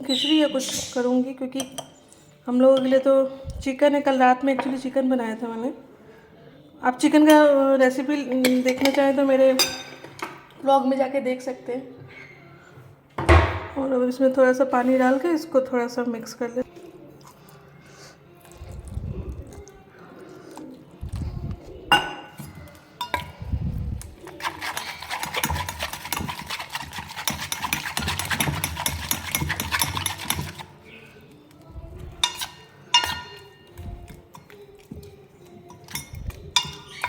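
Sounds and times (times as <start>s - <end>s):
spoon clinking against bowl: 1.5s - 2.0s, 8.4s - 10.2s, 21.9s - 23.4s, 24.4s - 30.7s, 32.2s - 34.6s, 35.6s - 37.0s
spoon stirring batter: 24.0s - 37.0s.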